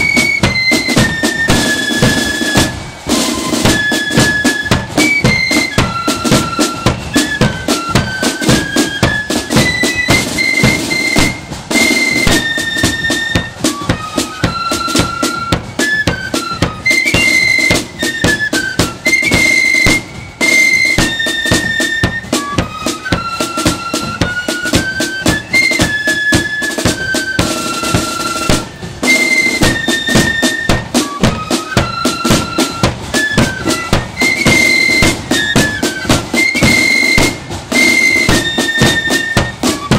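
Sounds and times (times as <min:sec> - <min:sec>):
flute melody: 0:00.0 - 0:39.9
snare and bass drums: 0:00.0 - 0:39.9.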